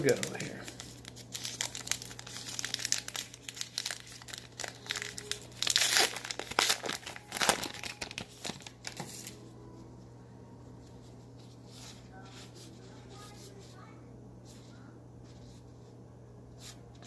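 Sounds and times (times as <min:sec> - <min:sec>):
foil wrapper crinkling and tearing: 0:00.0 - 0:09.4.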